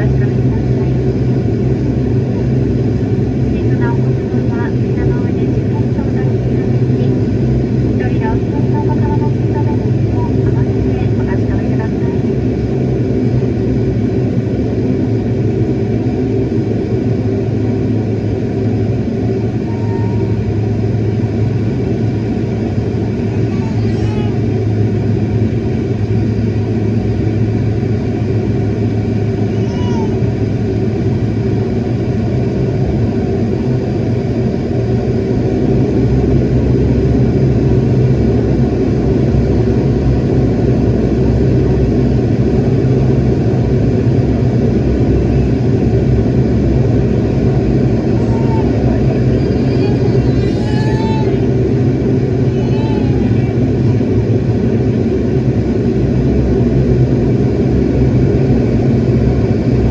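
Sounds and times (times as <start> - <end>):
jet engine cabin drone: 0.0 - 59.9
faint voices: 48.0 - 51.5, 52.4 - 54.1.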